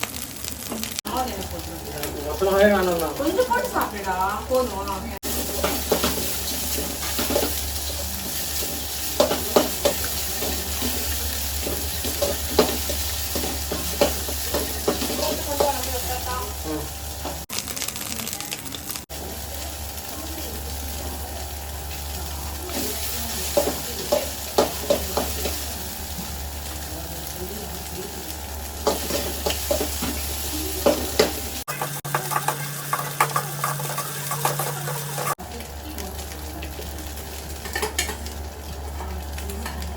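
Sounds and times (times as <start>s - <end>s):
fried rice sizzling in a pan: 0.0s - 39.9s
spatula scraping a metal pan: 31.7s - 35.4s.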